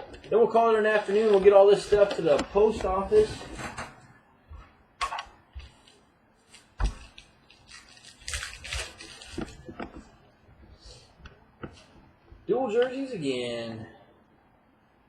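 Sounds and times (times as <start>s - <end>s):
wrapper crinkling: 0.1s - 3.3s, 5.8s - 10.0s.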